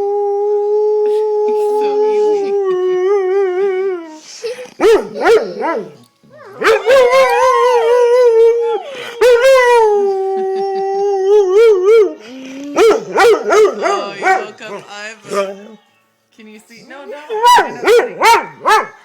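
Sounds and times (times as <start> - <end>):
dog howling: 4.8 - 14.5.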